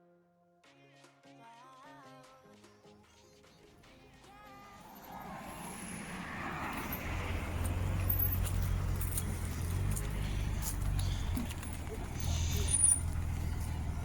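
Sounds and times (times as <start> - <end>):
car engine approaching: 3.8 - 14.0.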